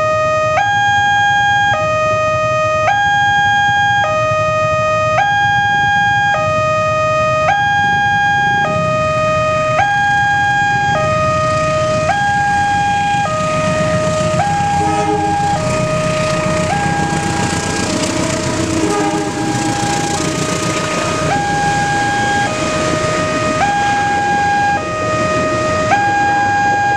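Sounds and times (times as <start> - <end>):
two-tone level crossing siren: 0.0 - 26.9
train rushing noise: 10.6 - 26.9.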